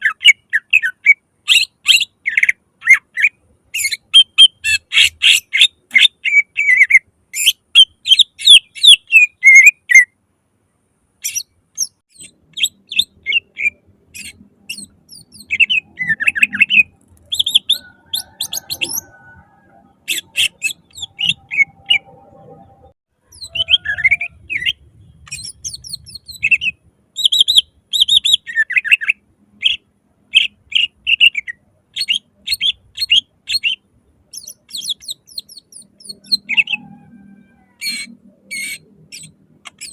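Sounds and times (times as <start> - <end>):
bird chirping and whistling: 0.0 - 10.1, 11.2 - 22.6, 23.3 - 39.9.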